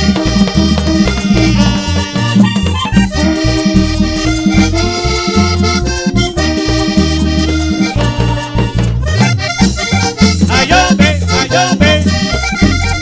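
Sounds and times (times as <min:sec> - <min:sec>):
band melody: 0:00.0 - 0:13.0
drum and percussion beat: 0:00.0 - 0:13.0
person singing: 0:10.4 - 0:12.9.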